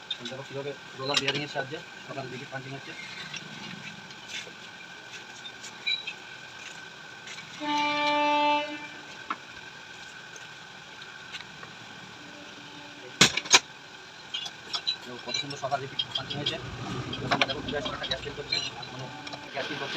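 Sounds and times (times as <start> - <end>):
steady high whine: 0.0 - 19.9
vehicle horn: 7.6 - 9.2, 12.1 - 13.2.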